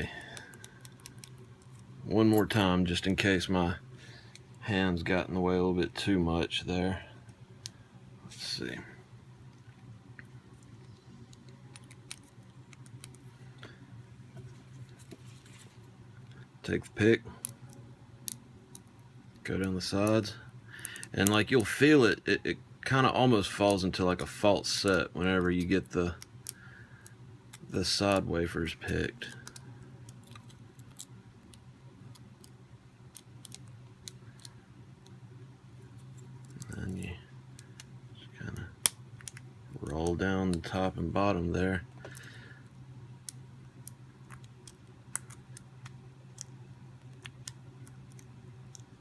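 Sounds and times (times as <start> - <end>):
low hum: 0.0 - 49.0.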